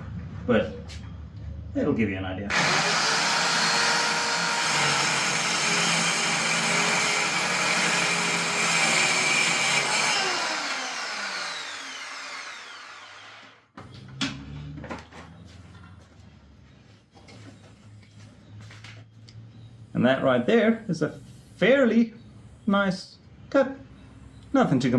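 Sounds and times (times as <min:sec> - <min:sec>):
circular saw cutting wood: 0:02.5 - 0:13.7.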